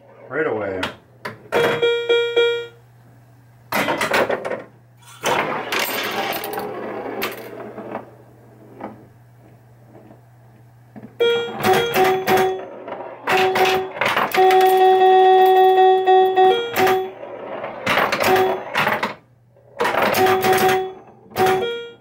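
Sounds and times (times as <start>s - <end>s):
steady low hum: 0.0s - 22.0s
electronic scoring tones: 1.6s - 2.8s, 11.2s - 12.6s, 13.3s - 17.2s, 20.2s - 22.0s
pinball mechanical clatter: 3.7s - 9.1s, 11.2s - 22.0s.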